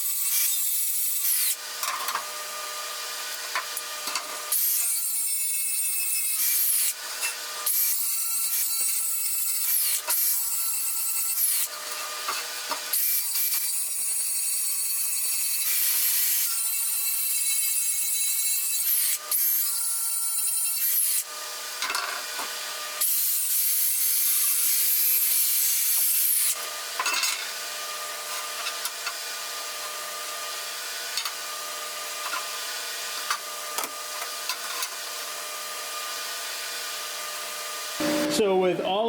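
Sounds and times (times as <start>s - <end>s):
power tool cutting steel: 0.0s - 38.6s
steady hum: 38.0s - 38.9s.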